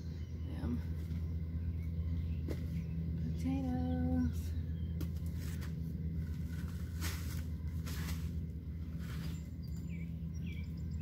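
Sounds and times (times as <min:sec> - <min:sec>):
steady low hum: 0:00.0 - 0:11.0
hands rustling in soil: 0:05.0 - 0:09.9.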